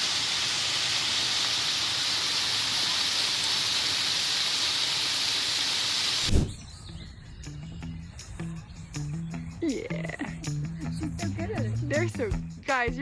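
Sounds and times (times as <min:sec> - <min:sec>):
heavy hailstorm hiss: 0:00.0 - 0:06.3
low thump: 0:06.3 - 0:06.7.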